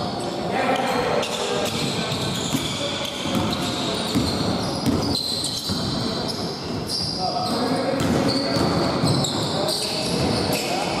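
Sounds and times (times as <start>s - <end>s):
sharp knocks and shoe squeaks: 1.2s - 10.9s
basketball bouncing: 2.5s - 6.0s.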